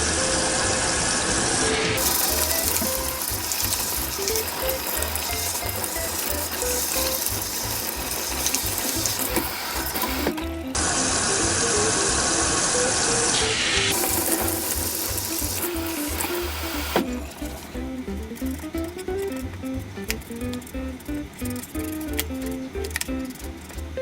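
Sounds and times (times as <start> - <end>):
tap water running: 0.2 - 24.0
music with bass beat: 2.0 - 10.9, 13.8 - 24.0.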